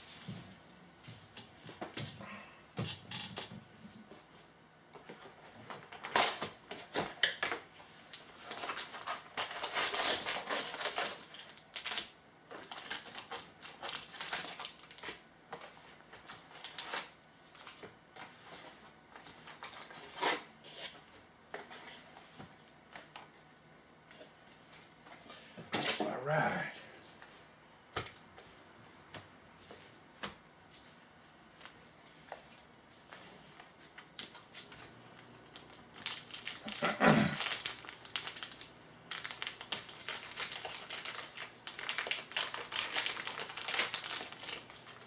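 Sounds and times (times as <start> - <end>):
packaging and cards rustling: 5.0 - 22.2, 31.6 - 45.0.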